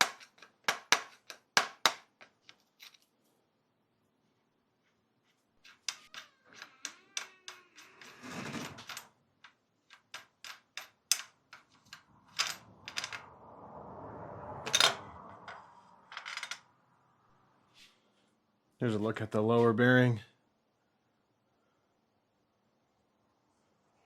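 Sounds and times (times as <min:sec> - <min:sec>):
metallic tool clicks and knocks: 0:00.0 - 0:03.0
metal scraping: 0:05.6 - 0:09.2, 0:09.8 - 0:16.7.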